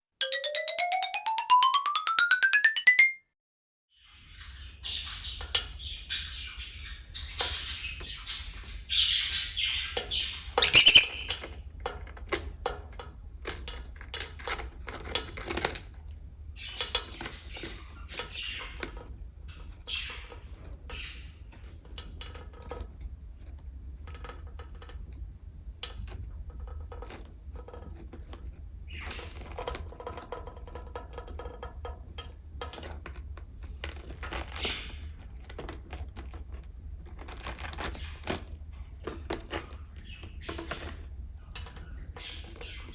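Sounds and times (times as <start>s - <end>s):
bird chirps: 10.6s - 11.4s
bird squawk: 10.6s - 11.4s.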